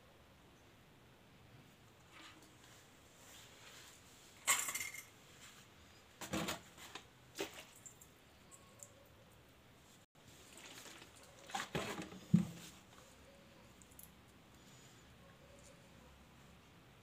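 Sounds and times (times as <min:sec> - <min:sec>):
metal tools clinking: 0:04.5 - 0:05.1.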